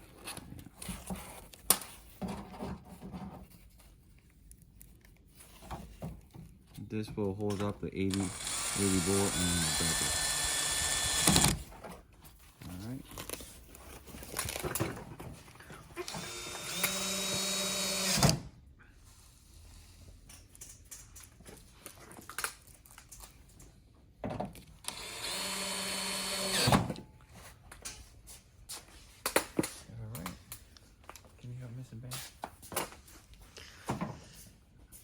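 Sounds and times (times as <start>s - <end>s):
electric screwdriver motor whine: 8.1s - 11.6s, 16.0s - 18.4s, 24.9s - 26.8s.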